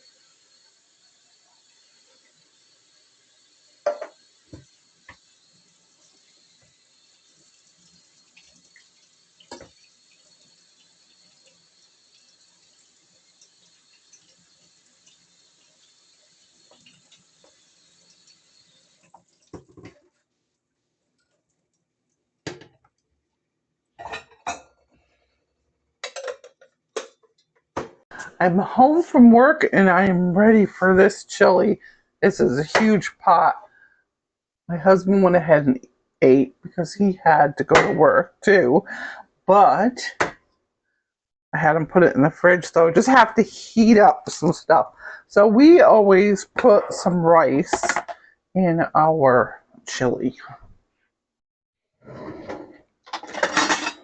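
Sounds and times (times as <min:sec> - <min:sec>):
dishes clattering in sink: 0:03.8 - 0:04.2, 0:19.5 - 0:20.0, 0:22.5 - 0:22.8, 0:24.0 - 0:24.8, 0:26.0 - 0:27.2, 0:47.7 - 0:48.2, 0:52.1 - 0:54.0.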